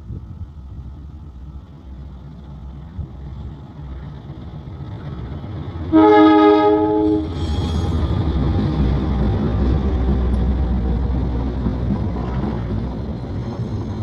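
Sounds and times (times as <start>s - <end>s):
train rumbling: 0.0s - 14.0s
locomotive horn blast: 5.9s - 7.5s.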